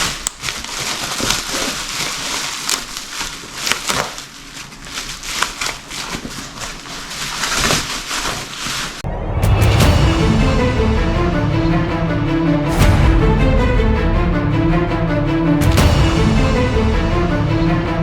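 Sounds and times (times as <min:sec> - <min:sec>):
crinkling and crackling: 0:00.0 - 0:09.0.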